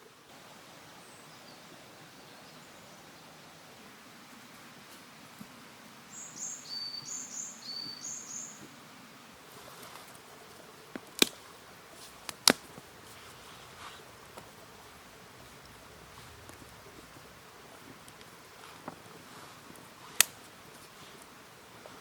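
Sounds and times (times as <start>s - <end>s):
bird singing high whistled notes: 6.1s - 8.6s
sharp cracks: 11.0s - 14.7s, 20.1s - 20.5s.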